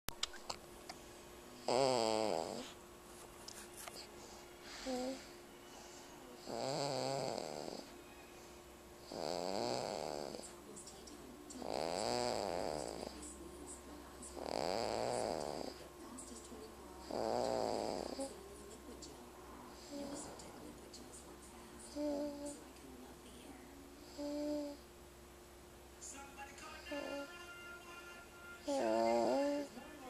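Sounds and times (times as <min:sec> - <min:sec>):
quiet breathing: 0:00.9 - 0:24.9
person snoring: 0:01.6 - 0:02.8, 0:06.4 - 0:07.9, 0:09.0 - 0:10.5, 0:11.6 - 0:13.2, 0:14.3 - 0:15.8, 0:17.0 - 0:18.3, 0:26.8 - 0:27.3, 0:28.6 - 0:29.8.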